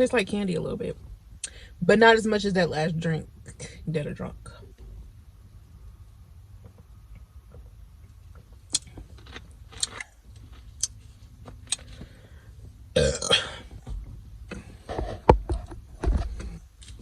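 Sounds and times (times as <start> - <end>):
woman burping: 13.0 - 13.7.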